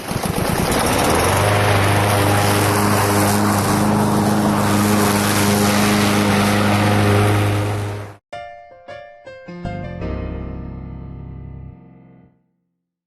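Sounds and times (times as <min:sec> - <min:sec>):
lawn mower engine running: 0:00.0 - 0:08.2.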